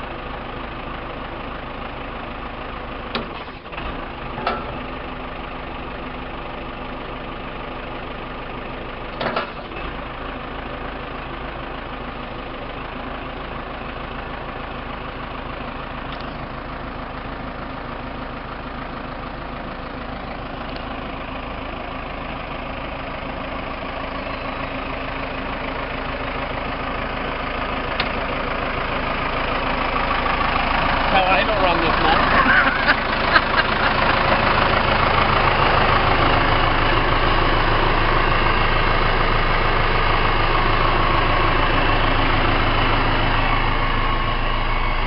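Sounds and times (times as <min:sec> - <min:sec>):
diesel engine idling: 0:00.0 - 0:45.0
brief clunk: 0:03.1 - 0:03.6, 0:09.2 - 0:09.7.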